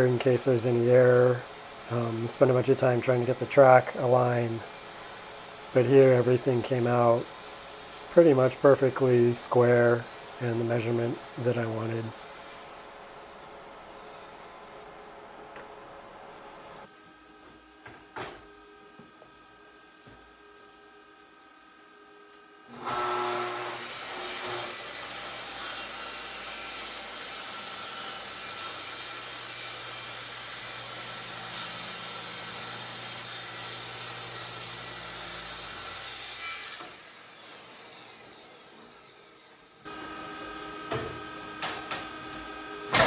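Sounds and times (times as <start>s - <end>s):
track saw cutting plywood: 22.7s - 43.0s.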